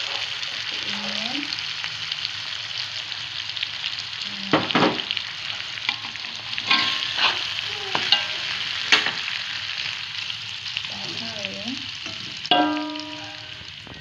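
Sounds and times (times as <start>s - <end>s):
food sizzling in oil: 0.0s - 14.0s
utensil clinking against pan: 5.9s - 9.2s, 12.1s - 13.5s
utensil scraping a pan: 5.9s - 9.3s.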